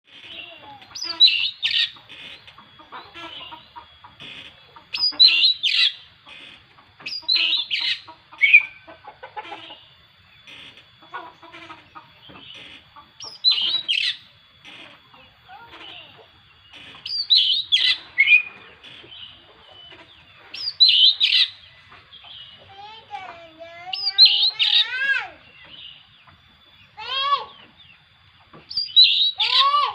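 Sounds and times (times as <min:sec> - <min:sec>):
bird chattering: 0:00.1 - 0:29.9
bird whistling song: 0:00.9 - 0:02.0, 0:04.9 - 0:06.1, 0:07.1 - 0:08.8, 0:13.2 - 0:14.3, 0:16.5 - 0:19.4, 0:20.5 - 0:22.6, 0:23.9 - 0:27.0, 0:28.7 - 0:29.9.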